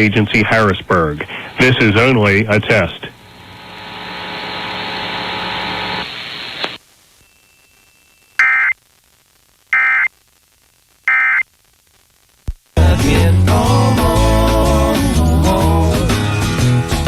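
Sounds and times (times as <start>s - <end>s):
broadcast hiss: 0.0s - 16.6s
short data tone bursts: 7.2s - 8.8s, 9.8s - 10.1s, 11.1s - 11.4s.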